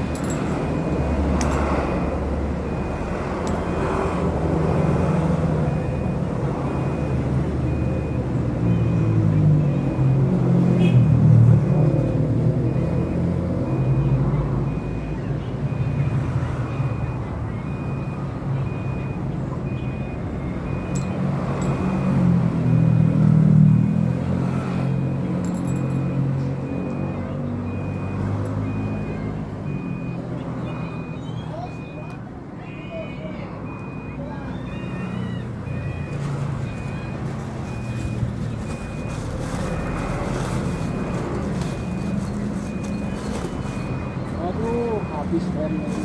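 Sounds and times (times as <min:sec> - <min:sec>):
faint high beeps: 0:24.9 - 0:39.2, 0:40.8 - 0:46.0.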